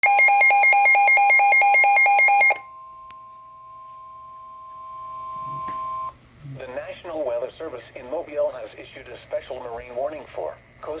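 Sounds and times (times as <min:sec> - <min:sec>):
alarm beeping rapidly: 0:00.0 - 0:02.8
steady alarm tone: 0:00.0 - 0:06.2.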